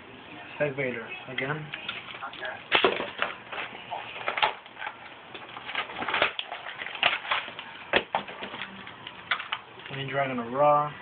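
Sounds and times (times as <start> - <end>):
foil wrapper crinkling: 1.8 - 10.4.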